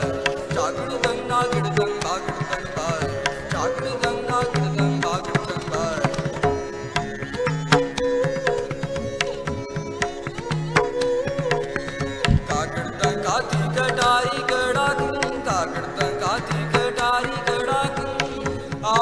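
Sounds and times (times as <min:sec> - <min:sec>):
bowed string melody: 0:00.0 - 0:19.0
harmonium tones: 0:00.0 - 0:19.0
tabla playing quick strokes: 0:05.0 - 0:12.7.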